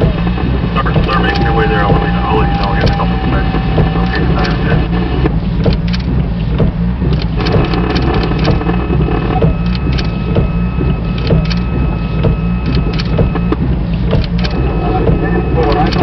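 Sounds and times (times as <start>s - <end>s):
faint high whine: 0.0s - 5.3s
low vehicle rumble: 0.0s - 16.0s
light clicks: 12.6s - 14.6s.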